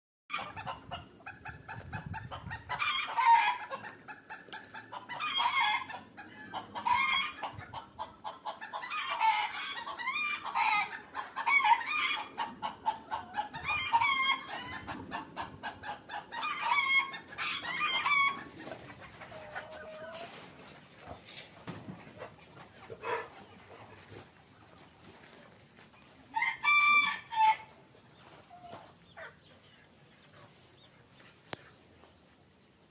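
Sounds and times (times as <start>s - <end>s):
chickens clucking: 0.3s - 32.9s
roosters crowing: 2.5s - 3.9s, 5.0s - 7.5s, 8.5s - 18.6s, 26.3s - 27.8s.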